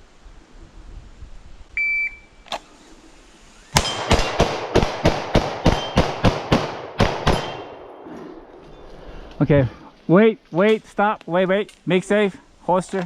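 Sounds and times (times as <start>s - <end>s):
rapid pistol shots: 3.8s - 8.0s.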